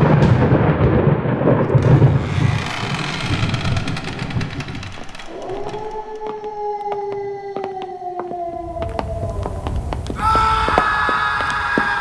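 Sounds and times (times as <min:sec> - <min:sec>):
deep thunder-like rumbling: 0:00.0 - 0:05.8, 0:08.5 - 0:11.6.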